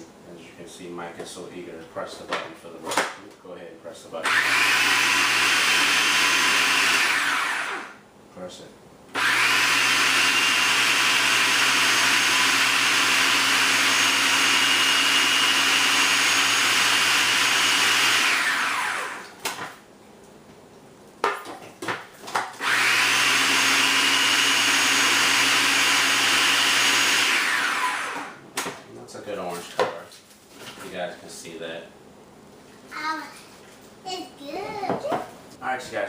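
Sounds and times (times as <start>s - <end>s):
electric mixer motor running: 4.2s - 8.0s, 9.2s - 19.3s, 22.6s - 28.4s.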